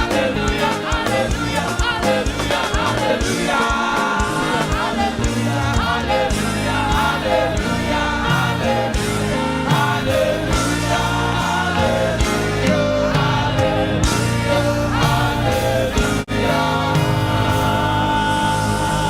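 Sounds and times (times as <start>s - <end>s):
choir and congregation singing: 0.0s - 19.0s
live band with steady beat: 0.0s - 19.0s.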